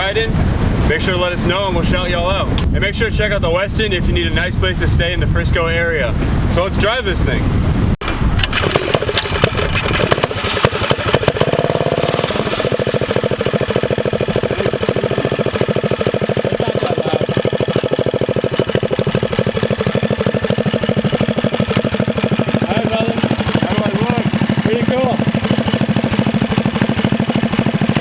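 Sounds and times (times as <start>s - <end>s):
minibike engine idling: 8.4s - 28.0s.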